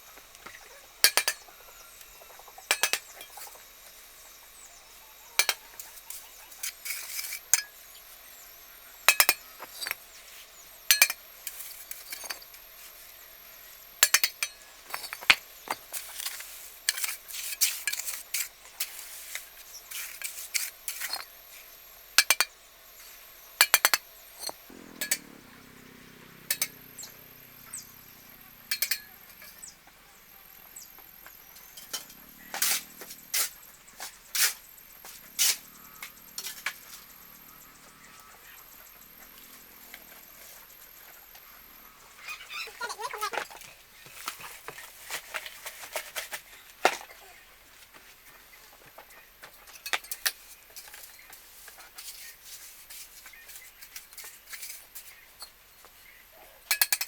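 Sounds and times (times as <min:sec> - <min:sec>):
hard objects clinking together: 0:26.4 - 0:29.9.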